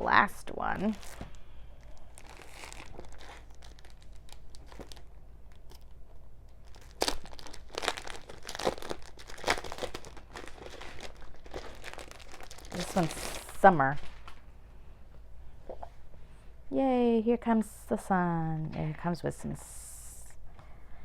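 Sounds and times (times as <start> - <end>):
paper and packaging crinkling: 0.7 - 6.0, 6.6 - 14.5.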